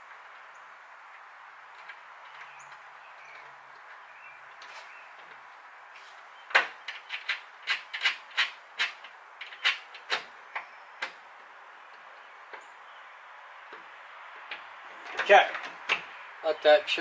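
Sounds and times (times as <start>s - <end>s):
metal hardware clicks and knocks: 6.5s - 11.2s, 14.4s - 16.1s.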